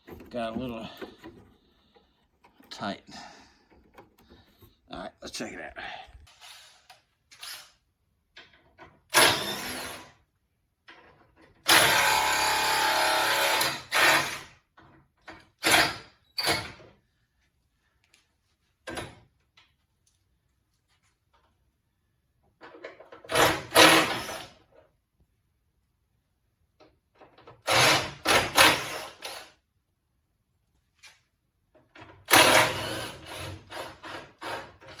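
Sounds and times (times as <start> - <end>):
knocks and rattles of parts: 0.0 - 4.9, 8.2 - 9.5, 10.8 - 12.0, 22.4 - 25.0, 26.7 - 29.5.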